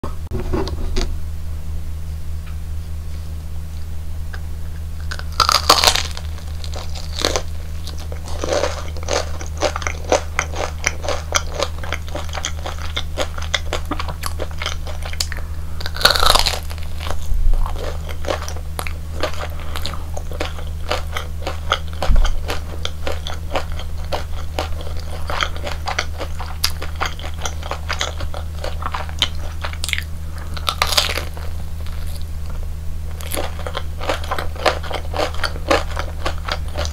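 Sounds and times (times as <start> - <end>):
low hum: 0.0 - 36.9
crunchy chewing: 4.8 - 36.9
crunching bites into fried batter: 5.0 - 32.2.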